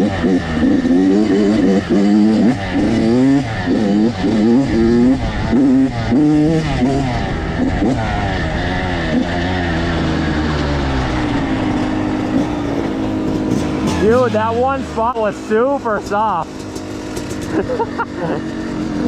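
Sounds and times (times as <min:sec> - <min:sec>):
dirt bike engine revving: 0:00.0 - 0:19.0.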